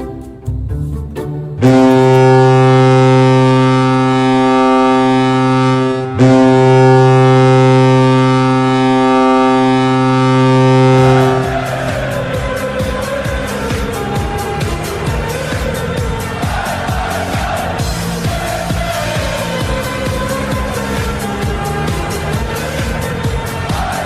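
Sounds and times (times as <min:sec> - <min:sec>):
deep air horn blasts: 0:01.6 - 0:24.0
music with a beat: 0:10.8 - 0:24.0.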